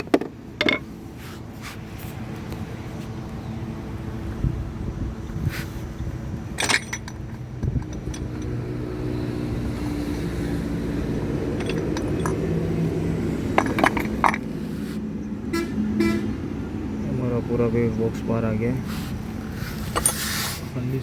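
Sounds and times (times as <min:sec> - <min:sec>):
metal tools clinking: 0:00.0 - 0:00.9, 0:06.5 - 0:08.6, 0:11.3 - 0:12.8, 0:13.4 - 0:14.5, 0:19.6 - 0:20.4
traffic hum: 0:00.0 - 0:21.0.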